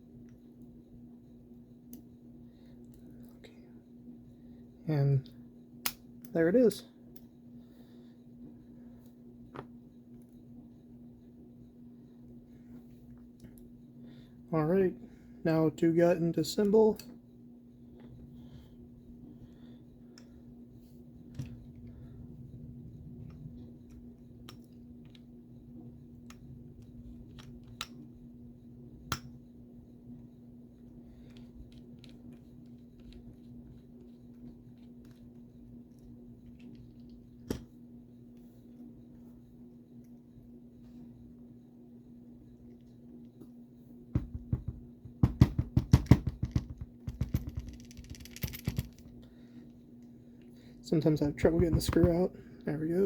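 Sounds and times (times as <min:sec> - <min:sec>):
low hum: 0:17.0 - 0:45.2.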